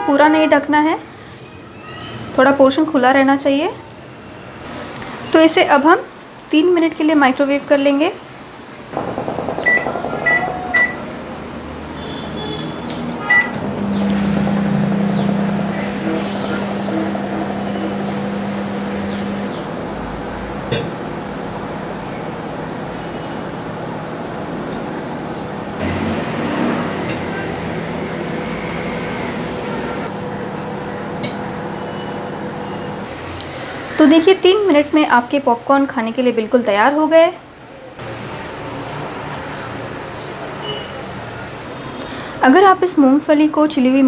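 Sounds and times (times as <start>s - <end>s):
microwave keypad beeping: 9.1s - 11.1s, 12.4s - 13.6s
microwave oven humming: 12.0s - 33.2s.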